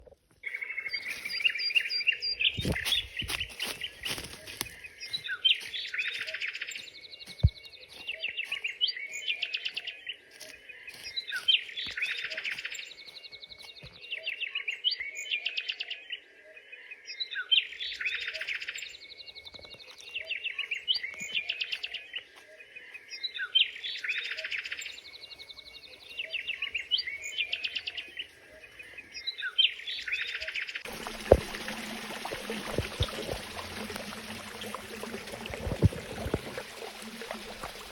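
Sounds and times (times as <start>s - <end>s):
songbird singing: 0.0s - 37.9s
flowing water rushing: 30.8s - 37.9s.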